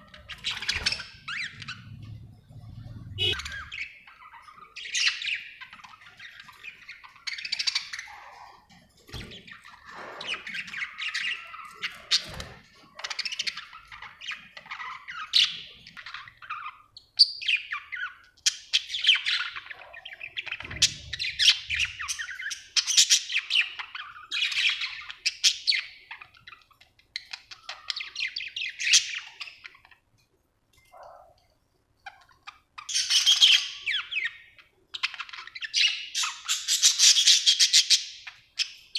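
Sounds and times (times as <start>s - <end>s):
budgerigar chirping: 3.2s - 5.5s.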